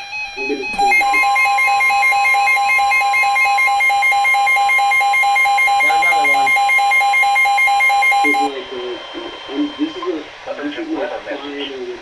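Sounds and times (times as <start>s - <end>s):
fast beeping alarm: 0.0s - 10.3s
steady alarm tone: 0.0s - 10.4s
person speaking: 0.3s - 1.9s, 5.4s - 6.9s, 8.0s - 11.2s.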